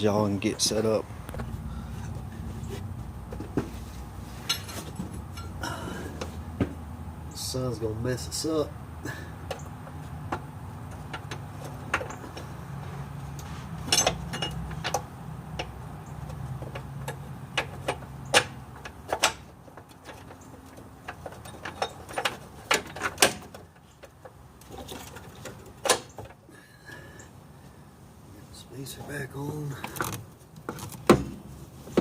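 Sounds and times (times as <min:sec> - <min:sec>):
metallic clicks and knocks of tools: 0:13.9 - 0:24.2.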